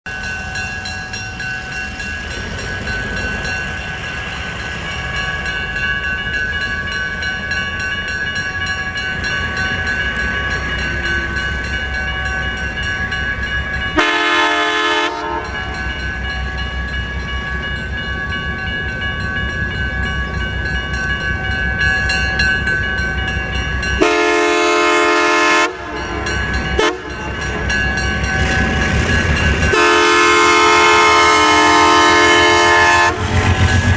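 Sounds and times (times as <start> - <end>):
diesel locomotive engine rumble: 0.0 - 33.9
locomotive air horn blasts: 14.0 - 15.6, 24.0 - 27.4, 29.7 - 33.4.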